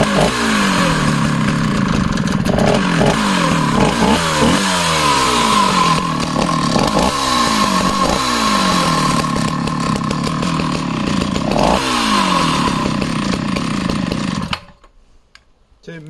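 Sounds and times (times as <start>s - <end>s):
chainsaw revving: 0.0s - 14.9s.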